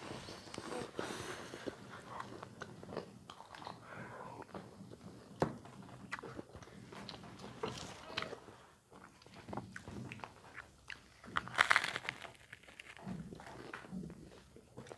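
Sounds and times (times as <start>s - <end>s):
crunchy chewing: 9.2s - 13.9s.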